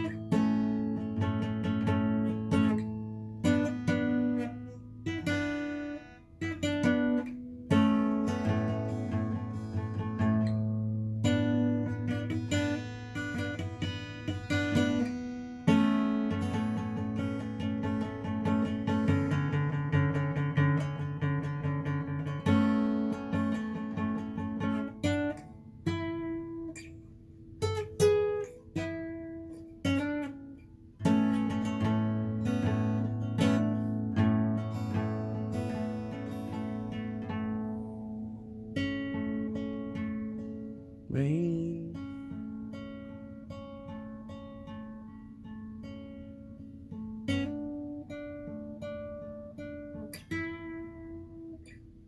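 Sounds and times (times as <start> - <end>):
acoustic guitar strumming: 0.0 - 52.0
guitar single picked notes: 23.4 - 43.4.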